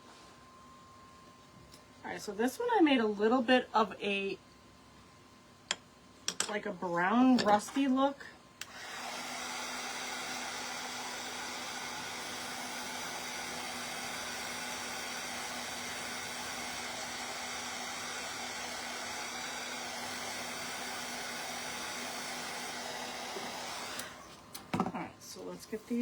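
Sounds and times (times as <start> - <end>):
hot-air blower running: 6.3 - 26.0.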